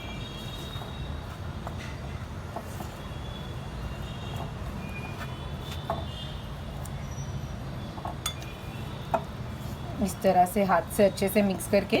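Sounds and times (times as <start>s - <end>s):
dough being kneaded by hand: 0.0s - 7.0s.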